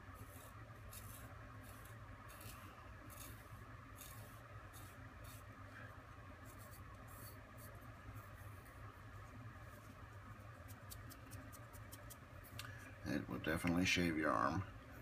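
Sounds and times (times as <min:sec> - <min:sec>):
knife blade shaving hair: 0:00.2 - 0:05.5, 0:06.5 - 0:07.8.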